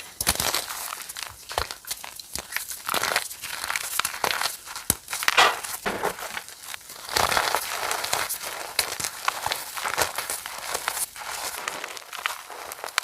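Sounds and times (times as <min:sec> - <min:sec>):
chalk crunching and crackling: 0:07.3 - 0:13.0.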